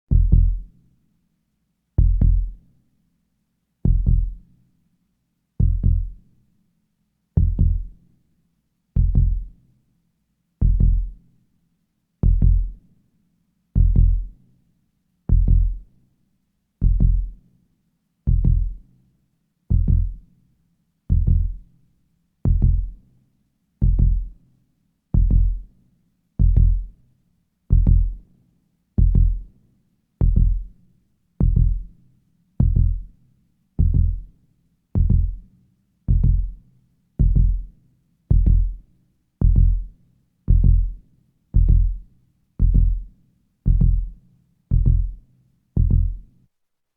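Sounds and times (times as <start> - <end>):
heartbeat thumps: 0.1 - 0.6, 3.9 - 4.4, 5.6 - 6.2, 9.0 - 9.5, 16.8 - 17.3, 18.3 - 18.8, 19.7 - 20.2, 21.1 - 21.6, 22.5 - 22.9, 23.8 - 24.3, 26.4 - 26.9, 27.7 - 28.2, 29.0 - 29.4, 30.2 - 30.7, 31.4 - 31.9, 32.6 - 33.1, 33.8 - 34.3, 35.0 - 35.4, 36.1 - 36.6, 37.2 - 37.7, 38.3 - 38.8, 39.4 - 39.9, 40.5 - 41.0, 41.6 - 42.0, 42.6 - 43.1, 43.7 - 45.2, 45.8 - 46.2.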